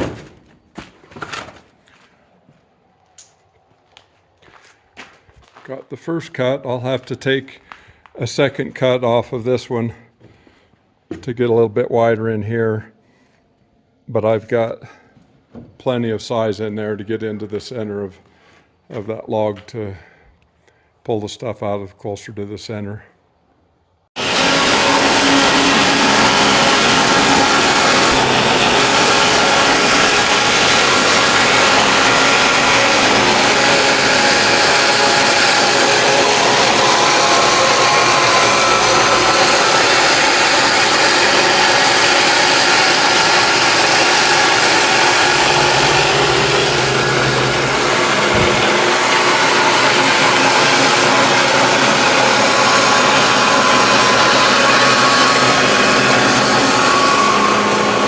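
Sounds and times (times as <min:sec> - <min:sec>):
engine-powered saw cutting log: 0:24.2 - 0:58.0.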